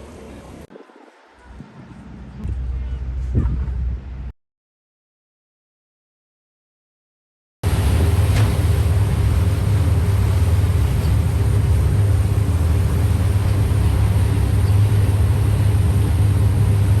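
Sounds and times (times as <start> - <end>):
boat engine droning: 7.6 - 17.0.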